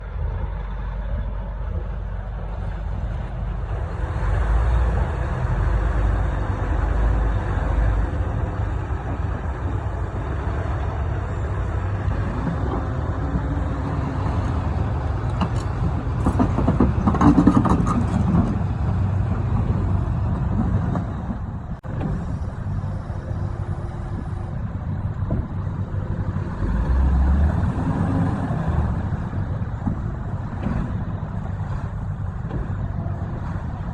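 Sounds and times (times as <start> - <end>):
heavy diesel engines running: 0.0 - 33.9.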